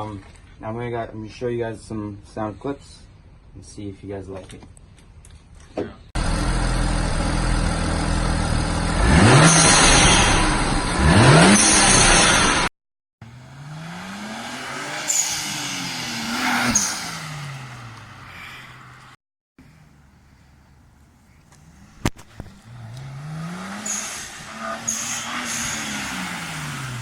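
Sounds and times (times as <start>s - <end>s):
car engine revving: 6.2s - 19.2s, 21.5s - 27.0s
turbo blow-off valve bursts: 22.3s - 27.0s.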